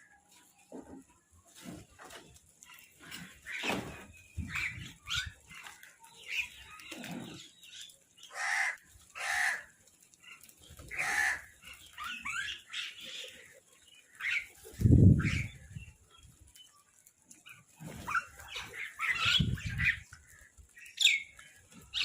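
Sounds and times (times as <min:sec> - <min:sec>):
chattering bird calls: 0:01.6 - 0:22.0
crows cawing: 0:08.2 - 0:09.7, 0:10.9 - 0:11.5.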